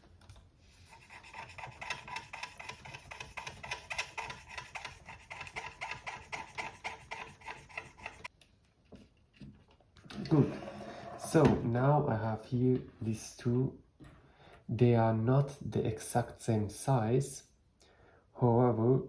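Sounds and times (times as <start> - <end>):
scrubbing a circuit board: 0.7 - 8.3.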